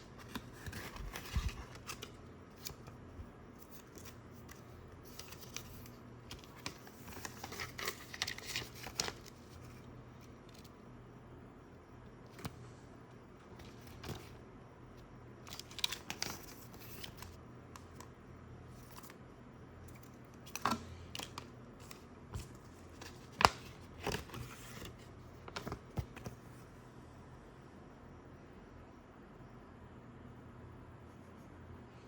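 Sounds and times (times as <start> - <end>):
packaging rustling and crinkling: 3.7 - 9.6.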